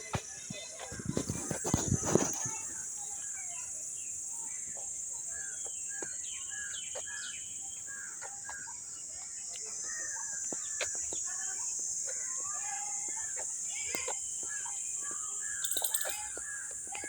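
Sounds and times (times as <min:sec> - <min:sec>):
birds chirping: 0:00.2 - 0:17.0
high-pitched hiss: 0:10.4 - 0:17.0.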